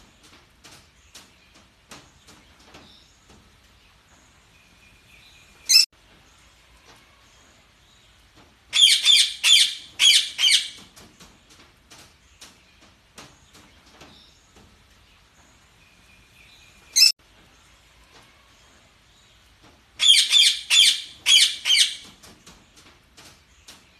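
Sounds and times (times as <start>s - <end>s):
parakeets calling: 8.7s - 10.8s, 16.9s - 17.1s, 20.0s - 22.1s.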